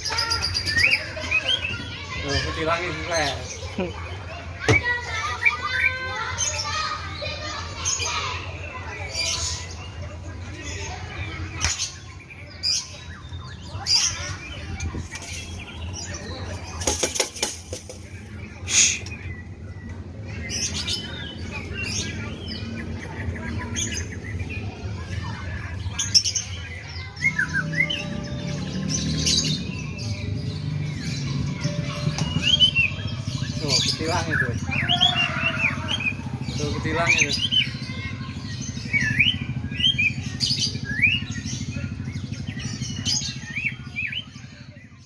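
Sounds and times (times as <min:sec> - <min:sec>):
bird singing chirps and trills: 0:00.0 - 0:45.0.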